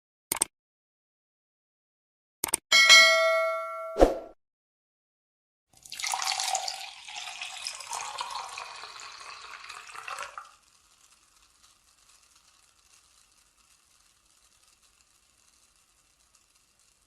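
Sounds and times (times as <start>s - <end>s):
drink poured into a glass: 5.7s - 11.9s
faint fizz of bubbles: 5.7s - 14.8s.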